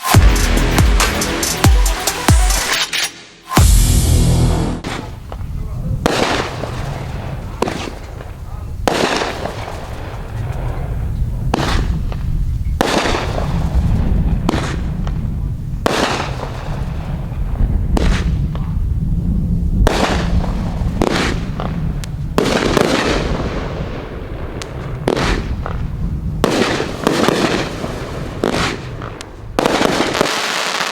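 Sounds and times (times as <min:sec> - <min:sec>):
fireworks launching and bursting: 0:00.0 - 0:30.9
low rumble: 0:03.6 - 0:05.9.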